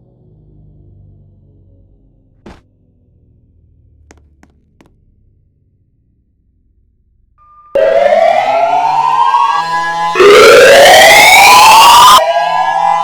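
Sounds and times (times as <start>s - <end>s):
siren rising wail: 7.5s - 13.0s.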